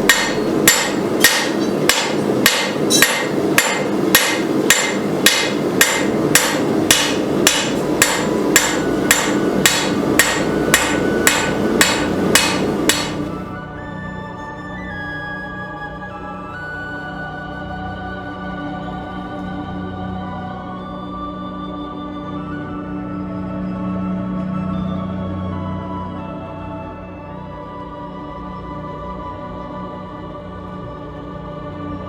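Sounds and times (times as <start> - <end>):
hammer striking steel on anvil: 0.0 - 13.4
background music with held notes: 0.0 - 32.0.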